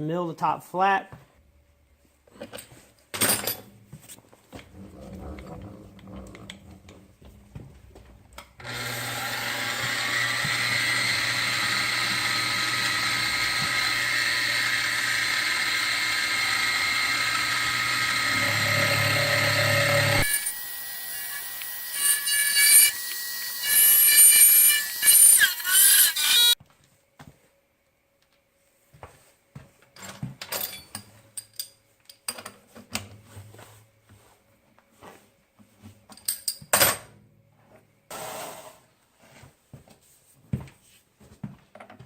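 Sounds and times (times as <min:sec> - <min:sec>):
milling machine cutting metal: 0:08.6 - 0:26.6.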